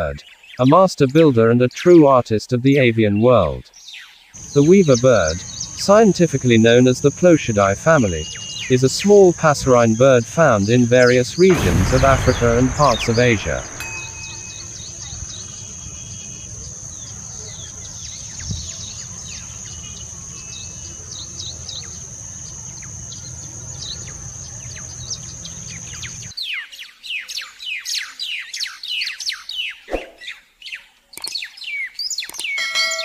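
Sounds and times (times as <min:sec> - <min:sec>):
small birds chirping: 0:02.8 - 0:32.6
low rumble: 0:11.5 - 0:15.0.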